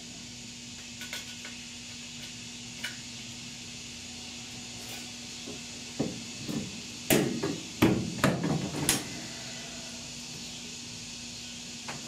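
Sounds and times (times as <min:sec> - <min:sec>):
knocks on sheet steel: 0:07.1 - 0:08.6.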